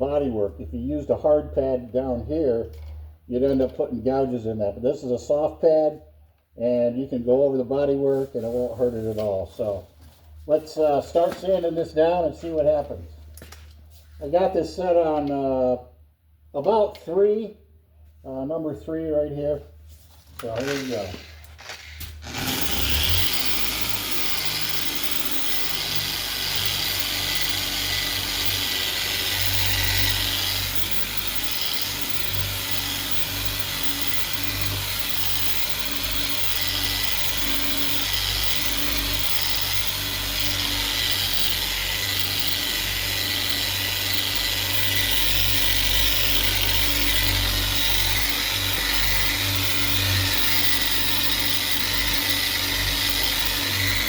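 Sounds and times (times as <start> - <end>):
orbital sander whine: 20.4 - 54.0.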